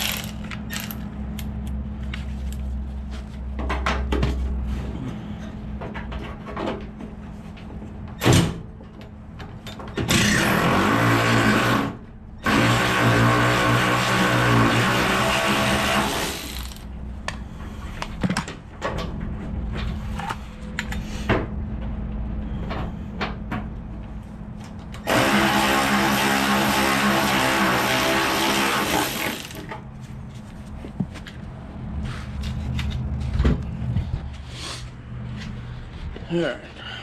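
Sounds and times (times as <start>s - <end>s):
power tool motor spinning bolts: 0.0s - 1.1s, 10.1s - 16.9s, 25.0s - 29.7s.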